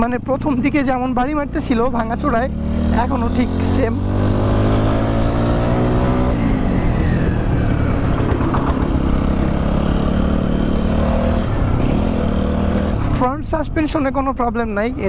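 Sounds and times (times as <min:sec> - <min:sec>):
motorcycle engine running: 0:00.0 - 0:13.3.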